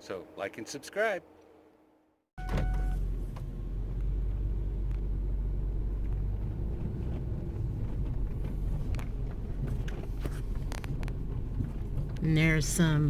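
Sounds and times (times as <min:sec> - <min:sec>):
vehicle driving rumble: 0:02.4 - 0:13.0
faint clicks and rattles: 0:07.5 - 0:12.3.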